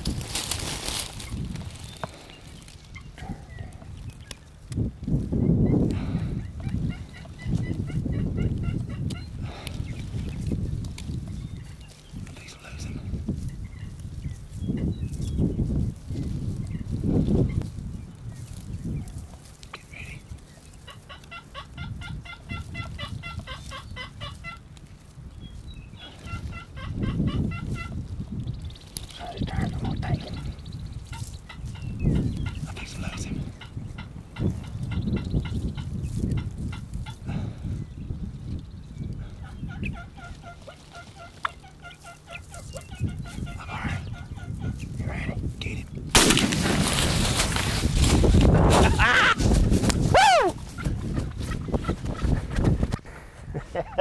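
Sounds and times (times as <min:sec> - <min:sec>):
turkey clucking: 0:06.5 - 0:09.3, 0:19.7 - 0:24.7, 0:26.0 - 0:28.0, 0:29.2 - 0:37.2, 0:39.3 - 0:44.9.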